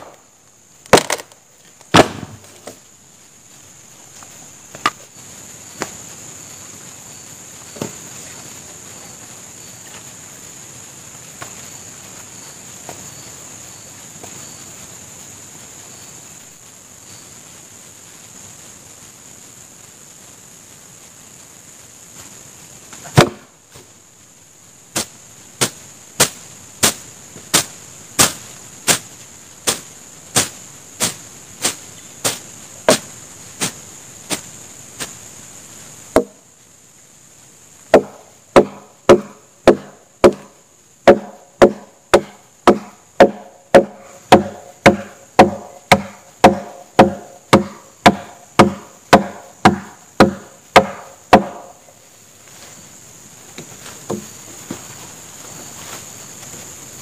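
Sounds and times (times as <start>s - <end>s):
steady high hiss: 0.0s - 57.0s
wood being chopped: 0.9s - 2.8s, 23.1s - 23.5s, 32.2s - 34.4s, 36.1s - 36.4s, 37.9s - 40.5s, 41.1s - 51.7s.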